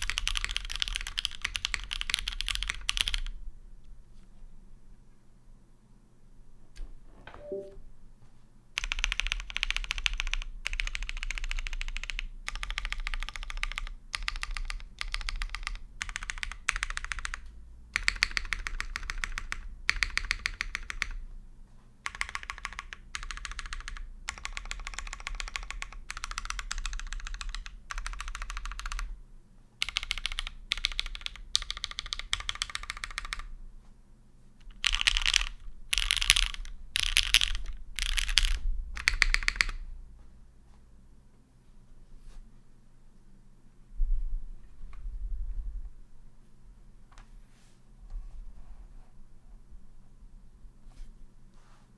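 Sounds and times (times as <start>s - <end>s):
mechanical keyboard typing: 0.0s - 3.4s, 8.8s - 21.2s, 22.0s - 29.2s, 29.8s - 33.5s, 34.6s - 39.8s.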